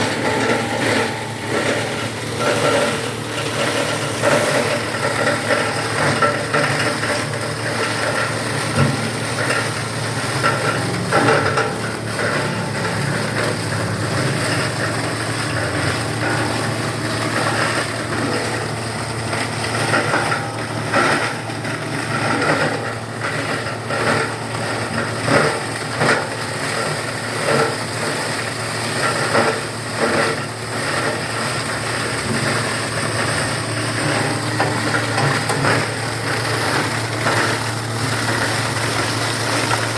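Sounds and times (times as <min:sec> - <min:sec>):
shredding machine humming: 0:00.0 - 0:39.9.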